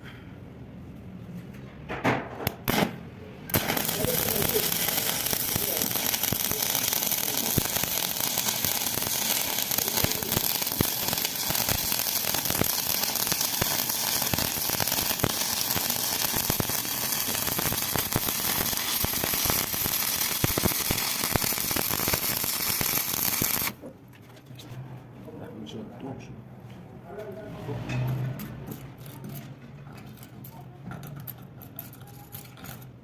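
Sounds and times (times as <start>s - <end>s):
welding arc crackling and popping: 2.5s - 23.8s.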